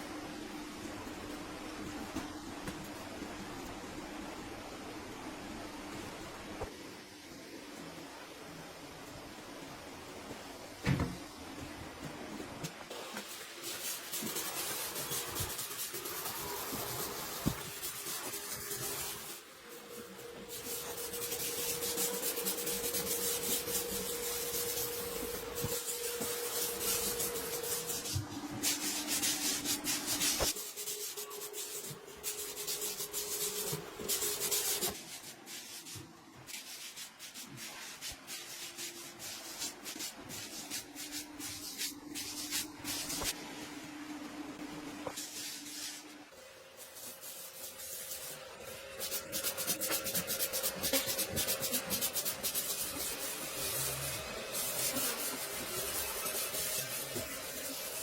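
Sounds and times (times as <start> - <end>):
scraping sanding noise: 20.0 - 43.4, 45.2 - 58.0.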